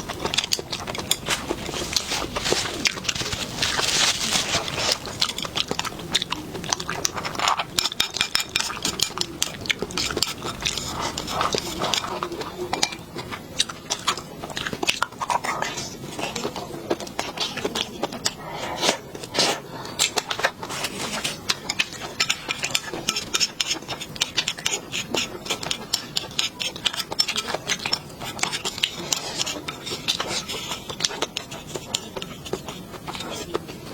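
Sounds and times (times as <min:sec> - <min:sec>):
utensil scrapes: 0:00.0 - 0:12.4
person chewing and smacking: 0:00.0 - 0:33.9.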